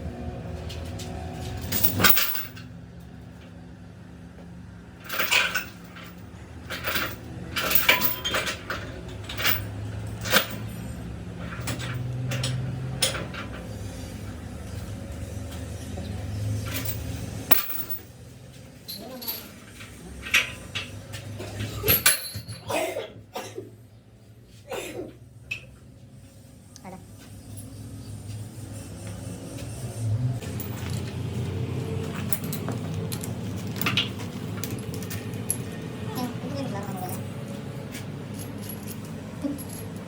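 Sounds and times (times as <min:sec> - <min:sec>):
metal tools clanking: 0:01.4 - 0:02.7, 0:05.0 - 0:13.8, 0:15.8 - 0:18.1, 0:18.8 - 0:23.5, 0:30.4 - 0:31.3, 0:32.0 - 0:40.0
low engine hum: 0:24.9 - 0:40.0.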